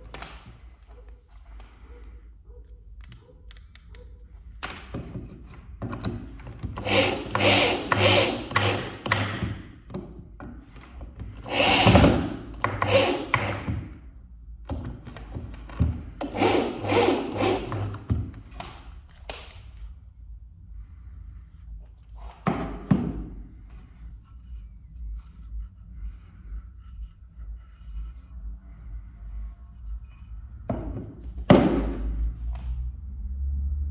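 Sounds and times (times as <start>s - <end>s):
electric drill motor: 6.2s - 9.6s, 11.2s - 13.9s, 16.1s - 18.2s.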